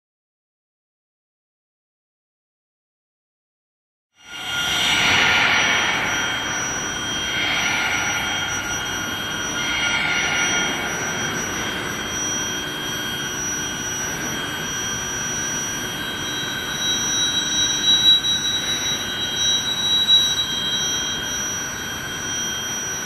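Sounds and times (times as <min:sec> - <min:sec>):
hiss: 0:04.2 - 0:12.0
high-pitched whine tones: 0:04.2 - 0:23.0
machine noise: 0:04.2 - 0:23.0.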